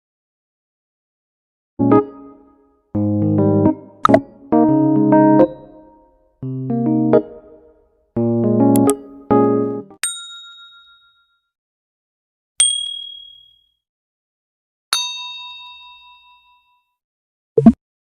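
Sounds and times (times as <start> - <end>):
electric keyboard chord: 1.8 - 7.6, 8.2 - 10.0
bell dings: 10.0 - 11.5, 12.6 - 13.8, 15.0 - 16.9.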